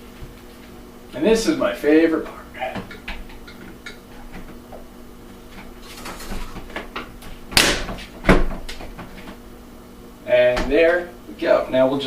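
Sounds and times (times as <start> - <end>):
scraping and rustling: 5.4 - 6.9
headrail snapping into brackets: 7.6 - 8.0.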